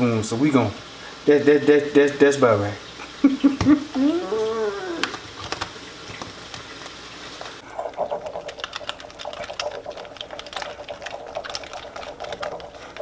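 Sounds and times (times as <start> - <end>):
utensil stirring sauce in bowl: 5.0 - 13.0.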